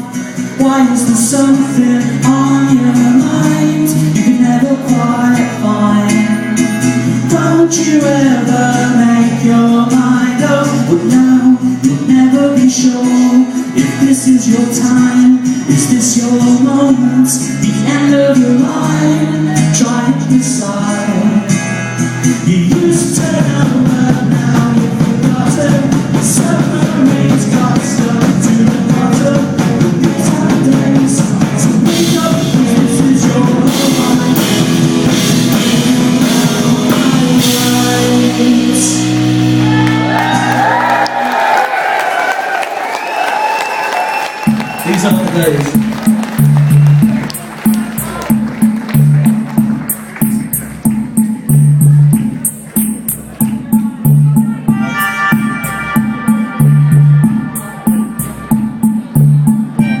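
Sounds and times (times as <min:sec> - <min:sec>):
live rock band playing: 0:00.0 - 1:00.0
repeating bass notes: 0:44.5 - 1:00.0.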